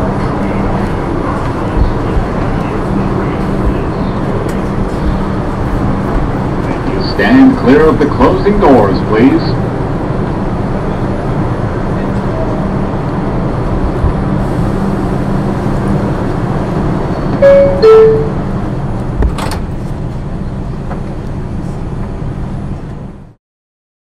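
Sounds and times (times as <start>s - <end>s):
subway car rumbling: 0.0s - 23.4s
two-note falling door chime: 17.4s - 18.4s.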